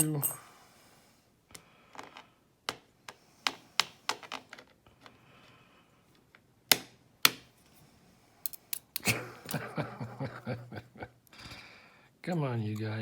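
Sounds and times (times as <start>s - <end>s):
tweezers clicking on lock pins: 0.0s - 0.4s.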